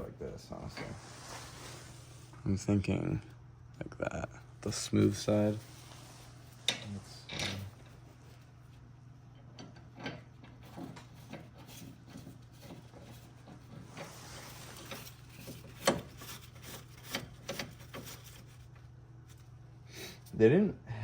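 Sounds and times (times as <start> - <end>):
scraping rub: 0.6 - 2.4, 4.7 - 8.9, 10.5 - 20.3.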